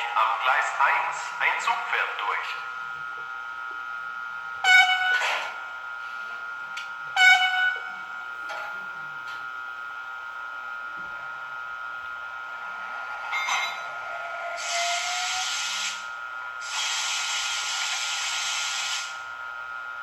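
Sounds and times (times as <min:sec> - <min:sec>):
high electric whine: 0:00.0 - 0:20.0
hissing air bursts: 0:14.6 - 0:16.0, 0:16.6 - 0:19.2.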